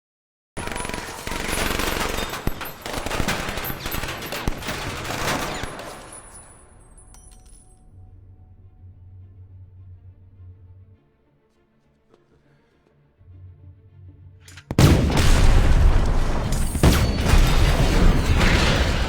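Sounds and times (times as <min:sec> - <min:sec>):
rapid gunfire: 0:00.6 - 0:06.4, 0:14.7 - 0:19.0.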